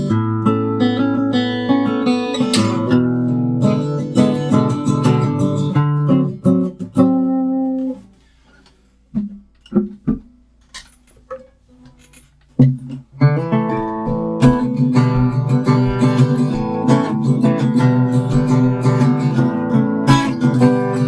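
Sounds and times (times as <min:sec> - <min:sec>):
acoustic guitar strumming: 0:00.0 - 0:08.1, 0:12.6 - 0:21.0
guitar notes plucked: 0:13.2 - 0:21.0.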